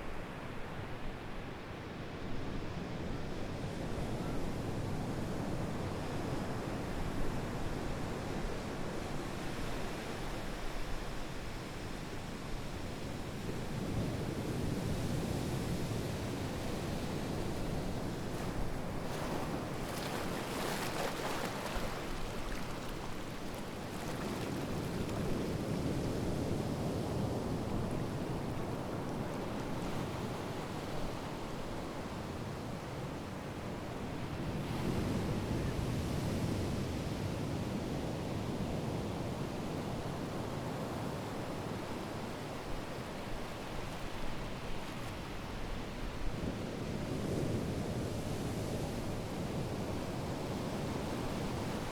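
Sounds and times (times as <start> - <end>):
ocean waves washing ashore: 15.6 - 51.9
ocean waves breaking on shore: 16.4 - 33.2.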